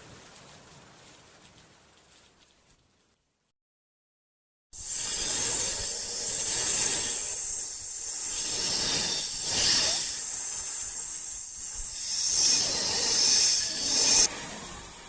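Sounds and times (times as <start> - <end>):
loud hissing: 4.8 - 15.0.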